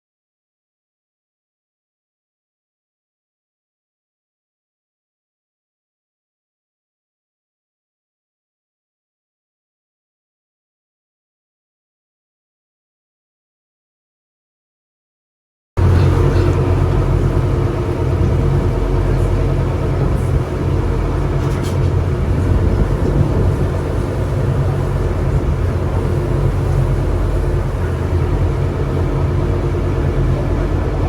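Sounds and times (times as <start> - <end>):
wind noise: 15.8 - 30.9
boat engine droning: 15.8 - 31.0
water noise: 15.8 - 31.0.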